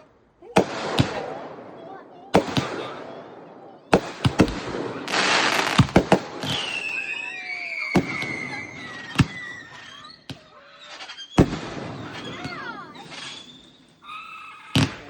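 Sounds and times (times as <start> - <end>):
fireworks banging: 0.0 - 14.1, 14.8 - 15.0
firework hissing burst: 5.0 - 10.0
falling firework whistle: 5.1 - 15.0.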